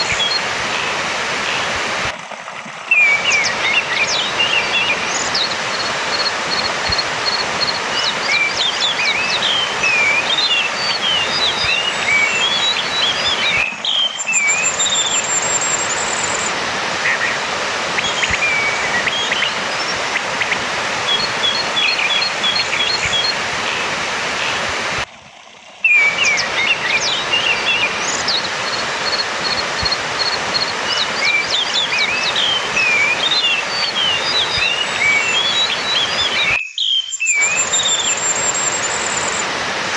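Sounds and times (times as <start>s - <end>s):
steady hiss: 0.0s - 36.5s
thrush singing: 2.9s - 25.0s.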